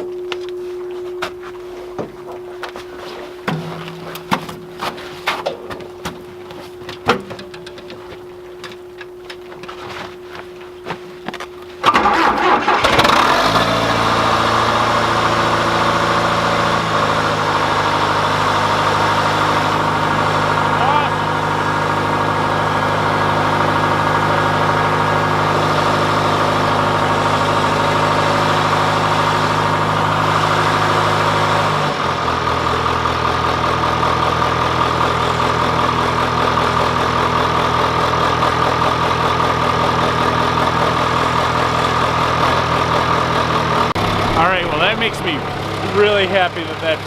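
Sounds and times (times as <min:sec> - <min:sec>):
diesel engine idling: 0:11.8 - 0:47.0.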